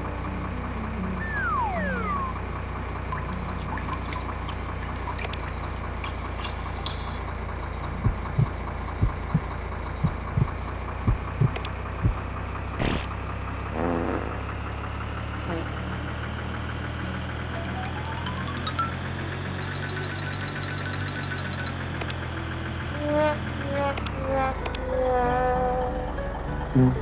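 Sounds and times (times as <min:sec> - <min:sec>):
low engine hum: 0:00.0 - 0:27.0
falling whistle: 0:01.2 - 0:02.5
short low thumps: 0:08.0 - 0:12.2.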